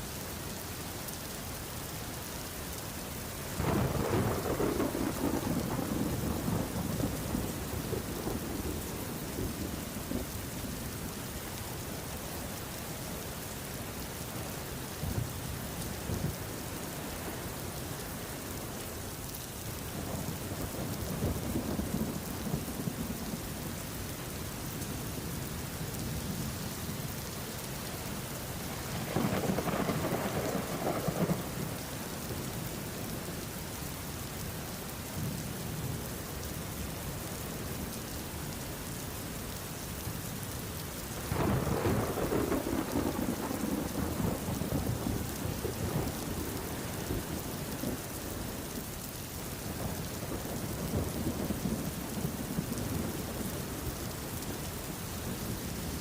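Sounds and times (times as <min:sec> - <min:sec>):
steady rain: 0:00.0 - 0:56.0
thunder rumbling: 0:03.6 - 0:10.3, 0:28.8 - 0:32.5, 0:41.2 - 0:48.7.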